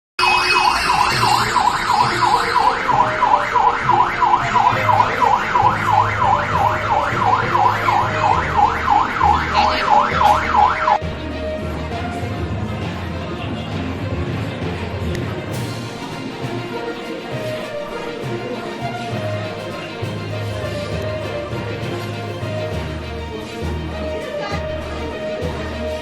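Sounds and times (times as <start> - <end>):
electronic siren yelping: 0.2 - 11.0
background music with low beat: 0.2 - 26.0.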